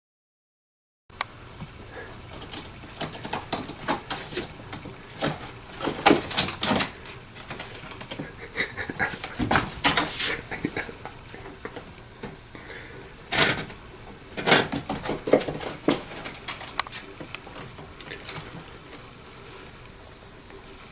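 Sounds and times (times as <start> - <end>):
rustling: 1.6 - 20.9
clicking and clattering: 2.1 - 8.4, 13.3 - 19.0.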